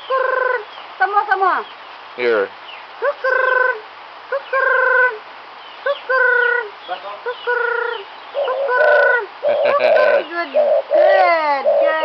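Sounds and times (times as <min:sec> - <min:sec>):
cuckoo calling: 0:00.0 - 0:00.9, 0:03.0 - 0:05.2, 0:05.8 - 0:12.0.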